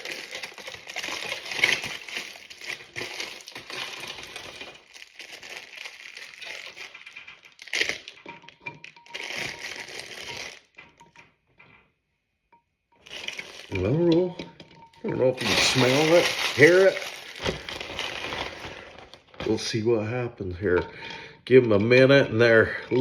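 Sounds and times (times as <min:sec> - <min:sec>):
foil and plastic bag crinkling: 0:00.0 - 0:11.2, 0:13.0 - 0:20.0.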